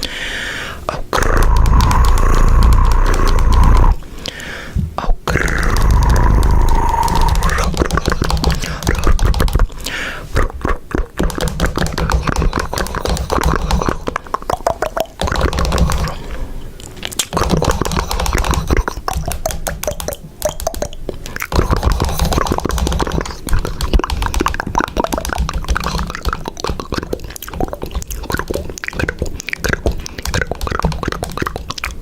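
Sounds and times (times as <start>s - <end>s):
short pitched vocal noises: 0.8s - 4.1s, 4.8s - 9.4s
mouth clicks and smacks: 0.8s - 32.0s.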